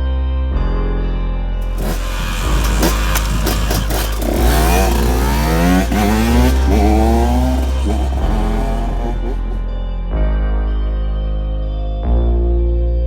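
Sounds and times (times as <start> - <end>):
two-stroke engine revving: 1.6 - 9.7
music with heavy bass: 1.6 - 9.8.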